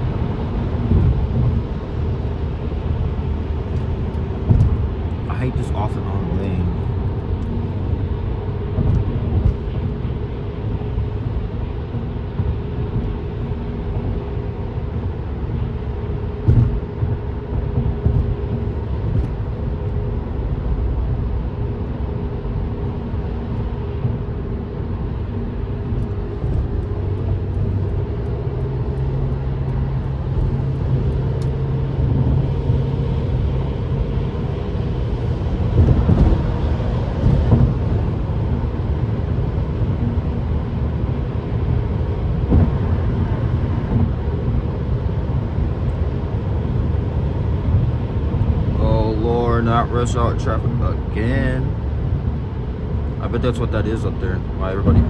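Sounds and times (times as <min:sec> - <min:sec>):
car engine drone: 0:00.0 - 0:55.0
thump: 0:04.5 - 0:04.8, 0:16.4 - 0:16.8.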